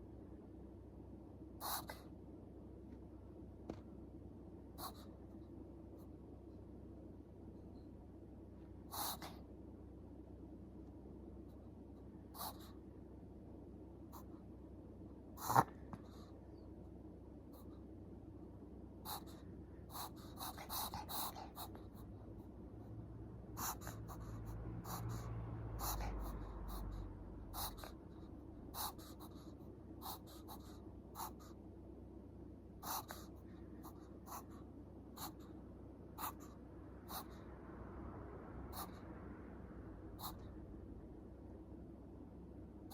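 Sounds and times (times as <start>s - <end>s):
dog reverse-sneezing snorts: 1.6s - 2.0s, 8.9s - 9.4s, 15.4s - 15.8s
dog snuffling breaths: 1.6s - 2.1s, 8.8s - 9.5s, 12.3s - 12.8s, 15.4s - 16.4s, 19.0s - 22.1s, 23.5s - 31.6s, 32.8s - 35.6s, 36.2s - 37.5s.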